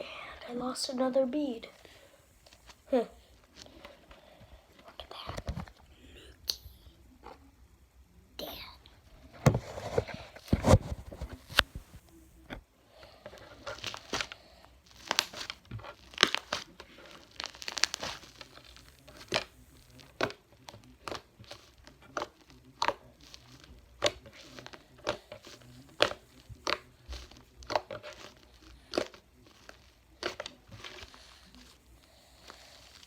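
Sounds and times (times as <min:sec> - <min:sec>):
slime popping and crackling: 0:13.4 - 0:33.0.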